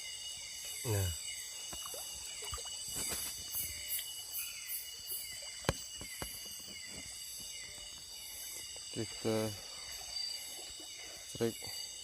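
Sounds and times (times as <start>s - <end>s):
night insects chirring: 0.0s - 12.0s
knocks and clicks from handling fish: 5.6s - 7.1s.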